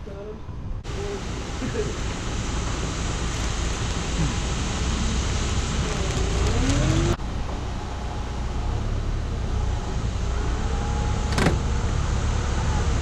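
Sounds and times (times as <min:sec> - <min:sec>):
road noise: 0:00.0 - 0:13.0
pickup truck engine rumble: 0:00.8 - 0:13.0.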